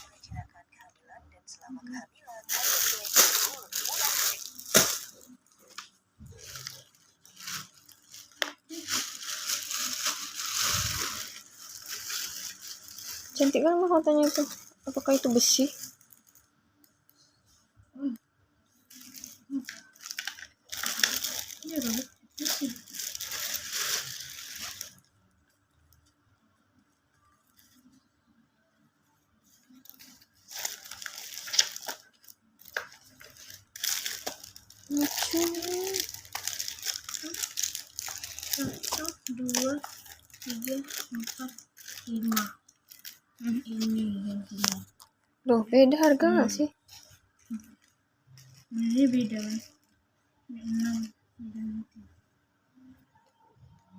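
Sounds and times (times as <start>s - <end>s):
plastic packaging crinkling: 1.9s - 17.2s, 18.8s - 26.2s, 29.4s - 45.3s, 46.0s - 50.0s.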